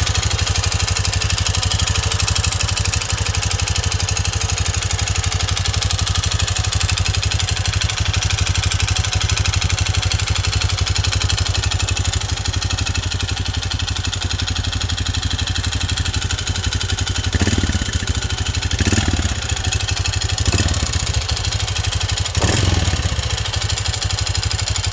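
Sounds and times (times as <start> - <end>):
motorcycle engine idling with clatter: 0.0 - 24.9
engine revving: 17.3 - 24.1.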